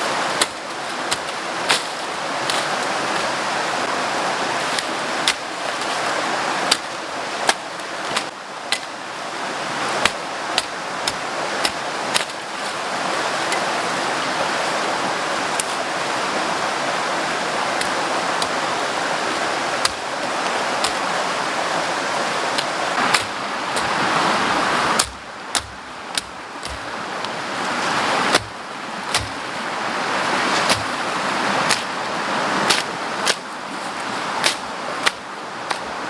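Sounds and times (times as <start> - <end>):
river water rushing: 0.0 - 36.0
sharp knocks: 25.0 - 26.9, 28.3 - 29.4.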